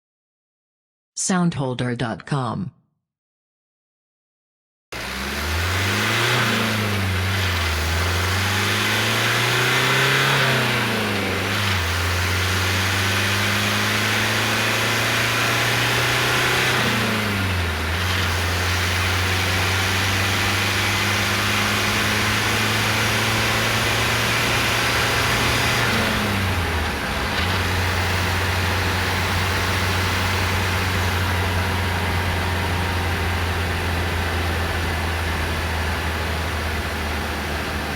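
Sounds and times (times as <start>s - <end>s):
diesel van engine accelerating: 4.9s - 37.9s.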